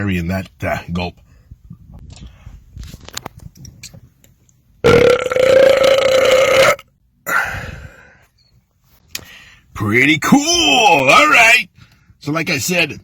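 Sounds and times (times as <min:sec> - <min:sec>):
man belching: 0:04.8 - 0:07.5.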